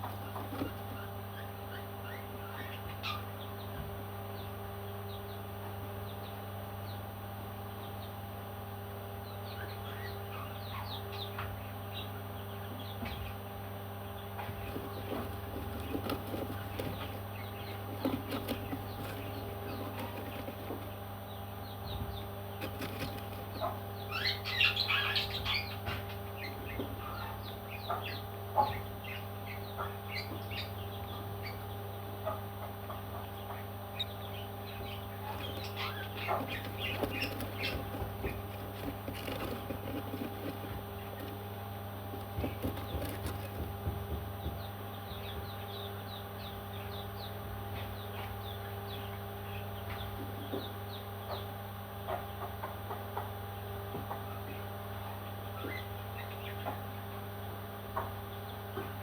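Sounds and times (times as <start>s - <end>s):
steady hum: 0.0s - 59.0s
baby parrots chirping: 14.4s - 21.0s, 21.6s - 31.6s, 33.1s - 41.5s, 42.1s - 43.8s.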